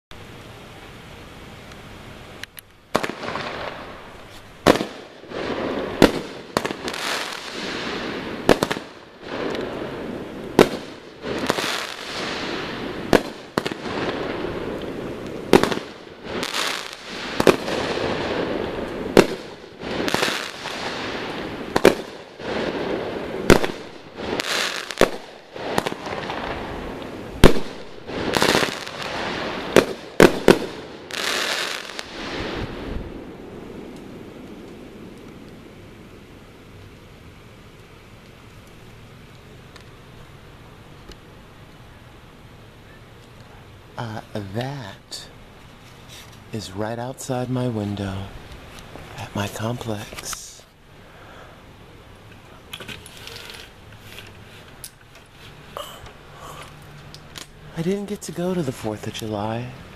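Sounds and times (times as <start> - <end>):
fireworks crackling hiss: 0.2 - 59.9
fireworks bangs: 2.9 - 36.1.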